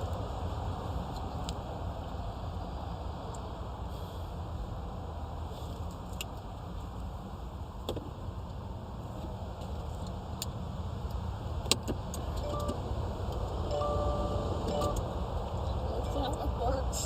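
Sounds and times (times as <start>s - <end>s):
car electronic warning chime: 12.4s - 12.8s, 13.6s - 15.2s.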